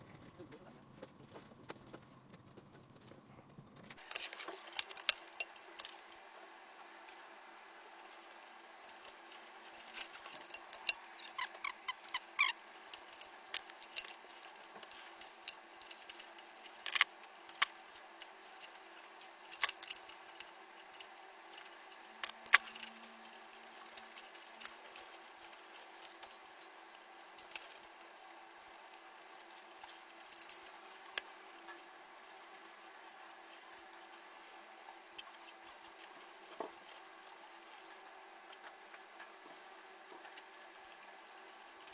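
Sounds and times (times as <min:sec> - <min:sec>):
computer parts clicking and rattling: 0:03.8 - 0:06.2, 0:07.9 - 0:41.9.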